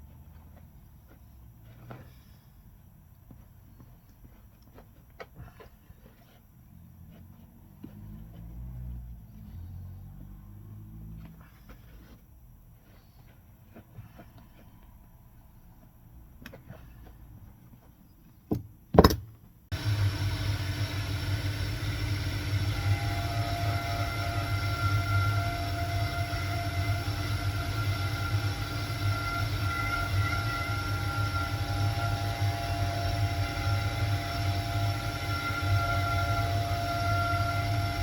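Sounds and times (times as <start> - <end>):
knocks: 18.5 - 19.4
electric machine humming and whining: 19.7 - 38.0.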